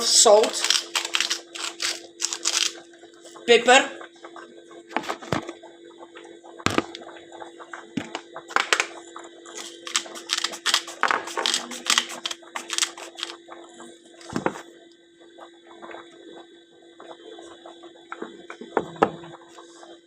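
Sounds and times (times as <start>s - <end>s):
steady low hum: 0.0s - 20.0s
spice containers clicking and tapping: 0.6s - 2.7s, 8.0s - 8.9s, 9.6s - 13.4s.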